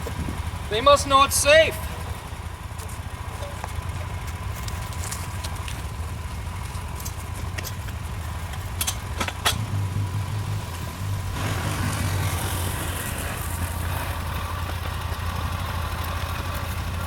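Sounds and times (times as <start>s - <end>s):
engine idling: 0.0s - 17.0s
rushing noise: 9.6s - 14.6s.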